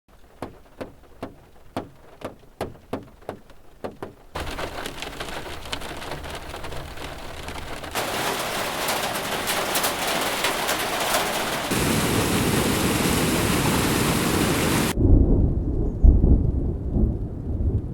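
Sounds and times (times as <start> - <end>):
steady rain: 0.1 - 15.0
heavy rain: 4.3 - 15.0.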